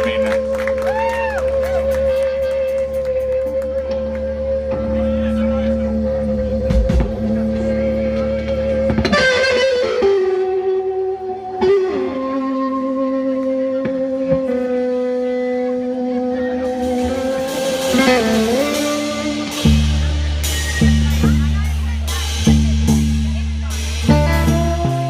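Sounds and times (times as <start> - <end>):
bass guitar: 0.0 - 25.0
drums: 0.0 - 25.0
electric guitar held notes: 0.0 - 25.0
cymbals: 16.7 - 25.0.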